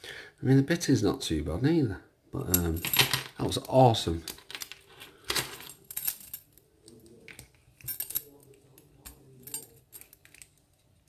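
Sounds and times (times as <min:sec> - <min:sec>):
padlock and key clinking: 0:04.3 - 0:06.6, 0:07.8 - 0:10.6.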